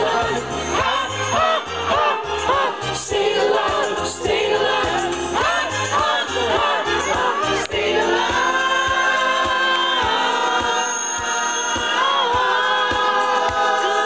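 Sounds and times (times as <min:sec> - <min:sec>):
choir singing harmonised chords: 0:00.0 - 0:14.0.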